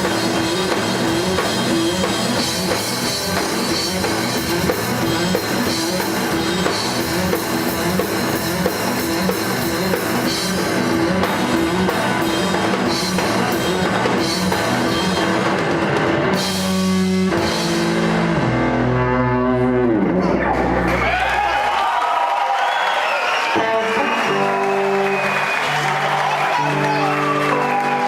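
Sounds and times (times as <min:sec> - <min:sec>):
drum kit pounding: 0:00.0 - 0:18.8
rock band playing: 0:00.0 - 0:22.0, 0:22.6 - 0:28.0.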